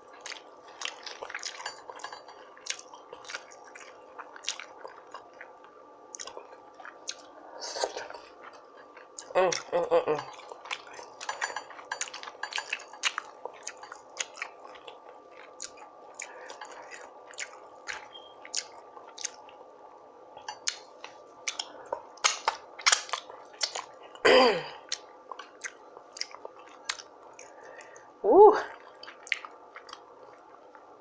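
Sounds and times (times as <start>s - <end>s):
chewing food: 0.0s - 19.7s, 20.4s - 24.2s, 24.8s - 28.1s, 28.7s - 31.0s
person humming: 9.3s - 10.3s, 28.2s - 28.7s.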